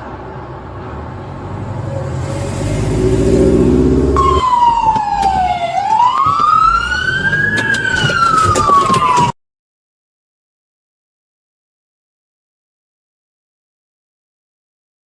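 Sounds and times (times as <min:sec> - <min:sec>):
police siren wailing: 0:03.3 - 0:09.4.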